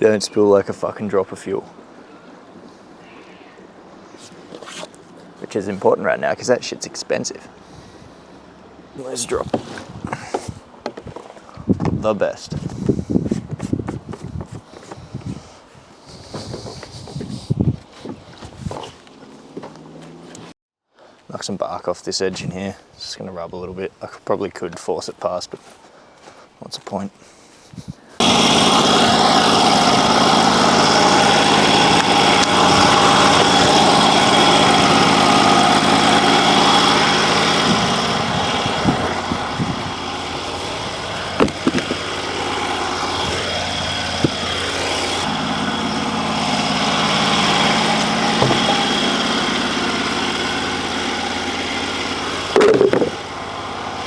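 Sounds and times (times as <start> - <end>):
band saw blade sawing log: 16.0 - 18.8, 28.2 - 54.0
petrol engine running: 28.2 - 54.0
short knocks: 41.3 - 42.1, 48.4 - 48.9.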